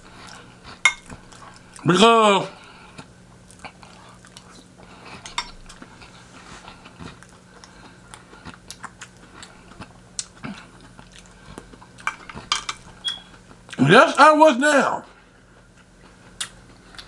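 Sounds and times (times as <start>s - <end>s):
faint chewing: 0.0s - 1.8s, 2.6s - 13.8s, 15.2s - 17.0s
low steady hum: 0.0s - 17.0s
utensils and dishes clinking: 12.0s - 13.2s.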